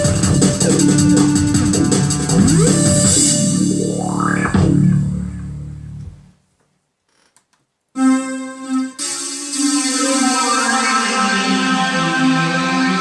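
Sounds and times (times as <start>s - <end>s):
keyboard passage with pitch sweep: 0.5s - 5.9s.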